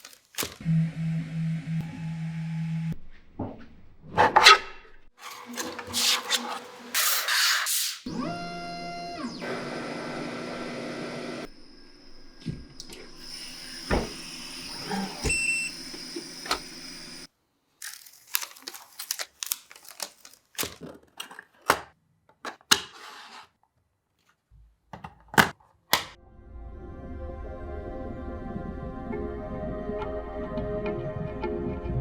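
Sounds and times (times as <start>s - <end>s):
mechanical running sound: 8.1s - 17.3s.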